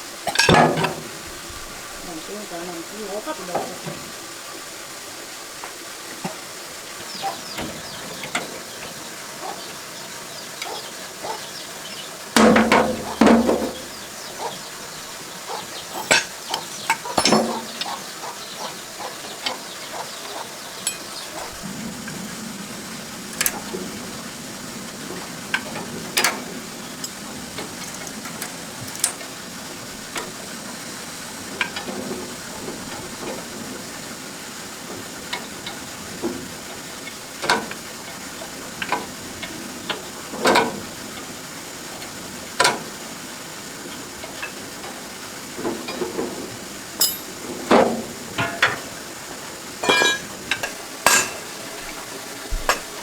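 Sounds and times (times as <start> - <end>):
steady hiss: 0.0 - 53.0
metal tools clinking: 0.3 - 1.0, 15.5 - 18.1, 20.8 - 21.6, 25.6 - 29.3, 45.6 - 48.9, 49.8 - 51.9, 52.5 - 53.0.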